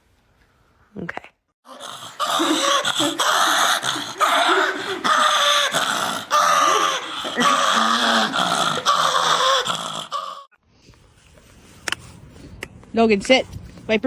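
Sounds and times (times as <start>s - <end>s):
dog grumbling and yelling: 1.6s - 10.5s.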